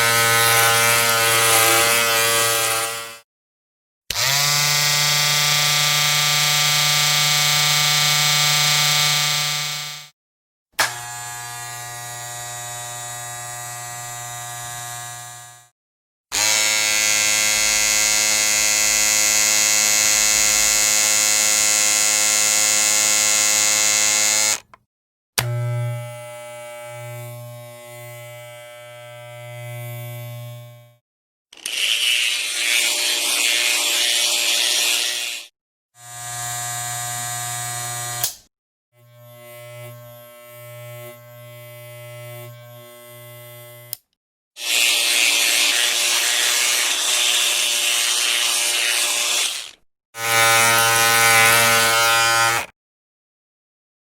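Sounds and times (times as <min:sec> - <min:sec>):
electric buzzing: 0:25.4 - 0:31.0
harsh noisy rasp: 0:44.6 - 0:52.7.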